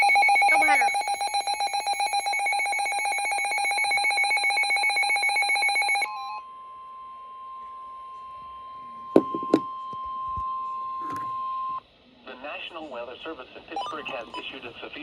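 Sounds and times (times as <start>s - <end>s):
pulsing alarm trill: 0.0s - 6.4s, 13.8s - 14.6s
steady warning tone: 0.0s - 11.8s, 13.8s - 14.8s.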